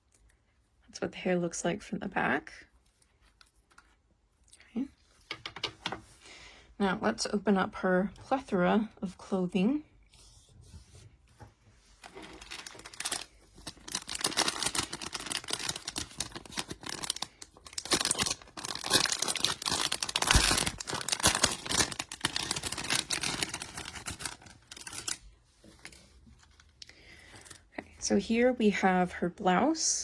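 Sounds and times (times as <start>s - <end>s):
packaging crinkling: 12.0s - 25.2s.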